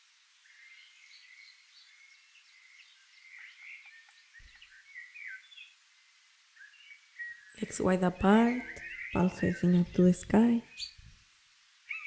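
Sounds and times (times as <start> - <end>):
small birds chirping: 0.2 - 11.2.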